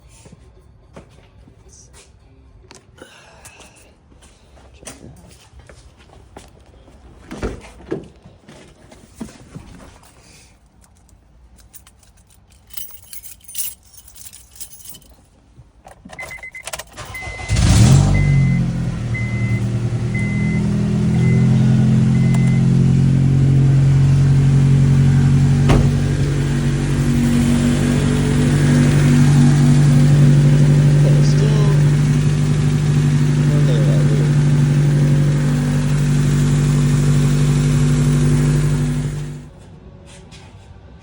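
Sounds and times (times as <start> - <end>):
keys jangling: 10.0 - 17.1
car engine cranking and idling: 15.8 - 39.6
dashboard chime beeping: 16.2 - 22.8.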